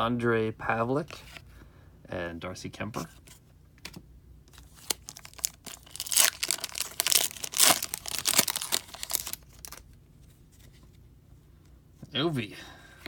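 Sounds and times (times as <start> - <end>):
card pack wrapper crinkling: 4.5 - 9.8.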